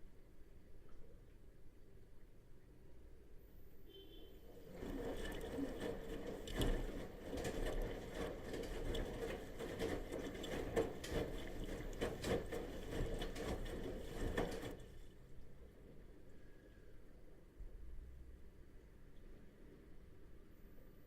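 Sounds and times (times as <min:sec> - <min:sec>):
washing machine motor humming: 0:04.4 - 0:14.9
laundry and water churning: 0:04.4 - 0:15.3.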